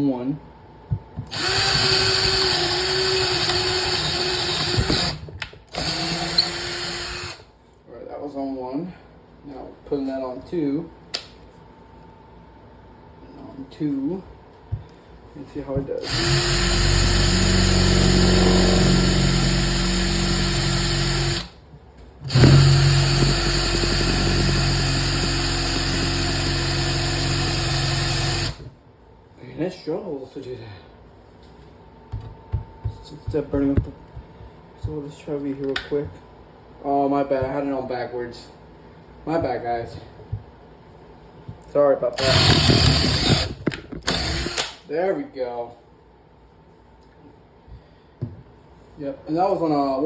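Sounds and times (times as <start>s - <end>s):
cordless drill motor running: 1.3s - 7.4s, 16.0s - 21.5s, 22.2s - 28.7s, 42.2s - 44.7s.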